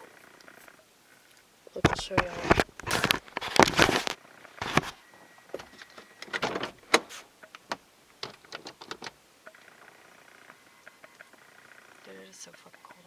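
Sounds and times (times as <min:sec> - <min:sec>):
device handling clicks and rustles: 0:01.3 - 0:05.0.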